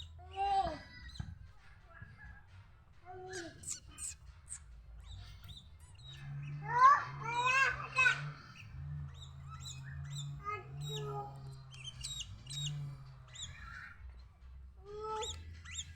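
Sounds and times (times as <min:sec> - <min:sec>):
bird singing: 0:00.0 - 0:15.9
faint low hum: 0:00.0 - 0:15.9.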